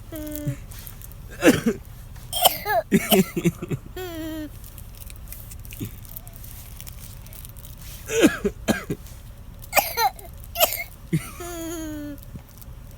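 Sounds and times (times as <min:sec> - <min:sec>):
baby coughing playfully: 0:01.3 - 0:04.5, 0:08.1 - 0:09.0, 0:09.7 - 0:12.2.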